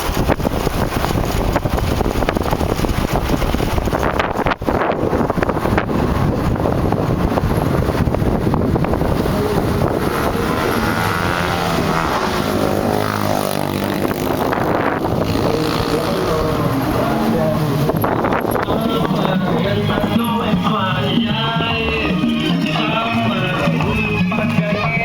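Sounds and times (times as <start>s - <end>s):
wind buffeting microphone: 0.0s - 24.0s
tyre and chassis rumble: 0.0s - 25.0s
wavering pitched drone: 8.2s - 24.5s.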